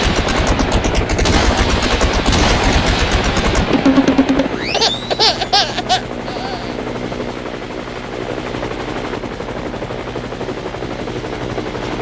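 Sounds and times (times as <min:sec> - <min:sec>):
toy helicopter rotor whir: 0:04.4 - 0:06.9.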